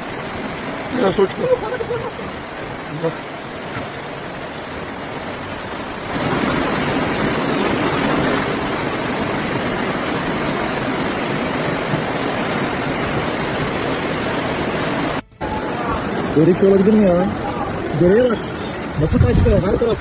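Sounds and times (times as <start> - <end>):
floodwater rushing roar: 0.0 - 20.0.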